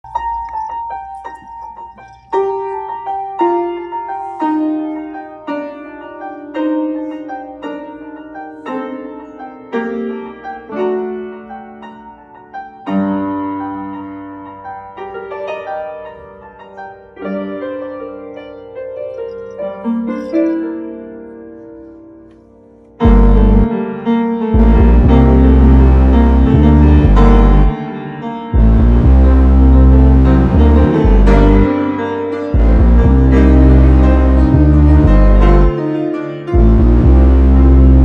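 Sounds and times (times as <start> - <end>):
bell-like keyboard melody: 0.0 - 4.4, 23.0 - 23.8, 24.5 - 38.0.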